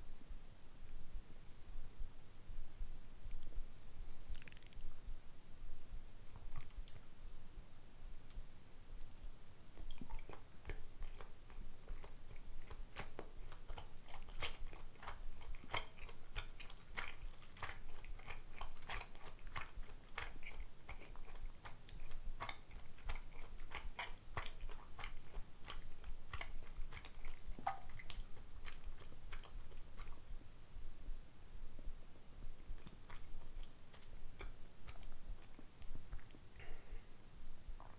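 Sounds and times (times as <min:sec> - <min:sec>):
wet chewing clicks and smacks: 0:04.3 - 0:04.9, 0:09.8 - 0:30.4, 0:32.5 - 0:36.5.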